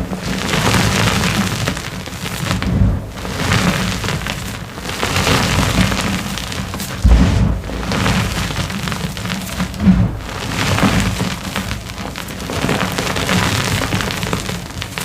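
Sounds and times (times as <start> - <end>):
dull thumps: 7.0 - 12.0.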